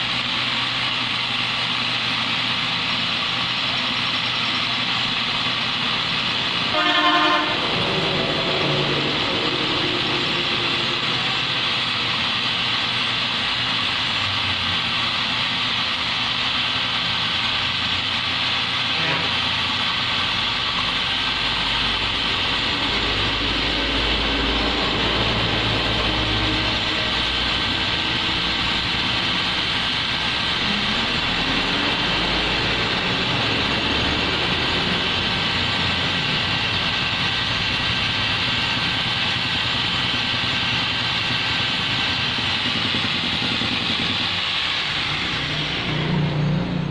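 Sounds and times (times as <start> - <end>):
low engine rumble: 0.0 - 46.9
road traffic: 0.0 - 46.9
vehicle horn: 6.6 - 8.2.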